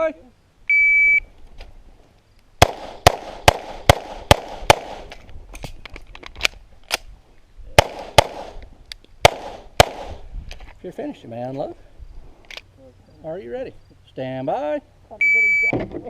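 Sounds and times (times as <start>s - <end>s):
pistol shots: 2.6s - 5.2s, 7.8s - 8.6s, 9.2s - 10.2s.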